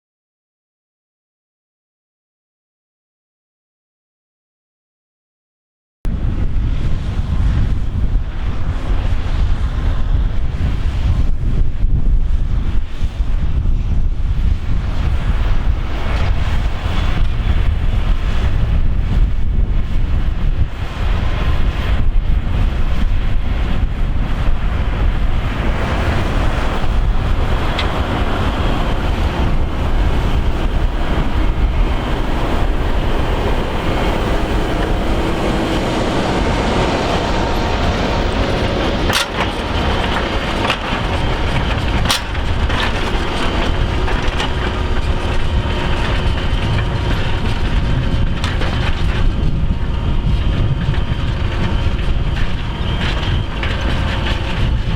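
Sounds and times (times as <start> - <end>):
tractor engine under load: 24.3 - 54.9.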